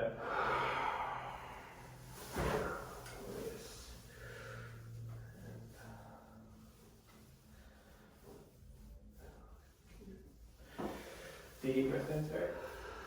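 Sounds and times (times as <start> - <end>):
person breathing out: 0.2 - 2.9.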